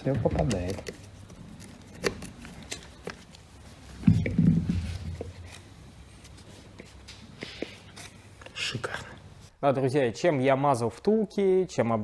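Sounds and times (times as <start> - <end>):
plastic parts dull knock: 0.0 - 1.0.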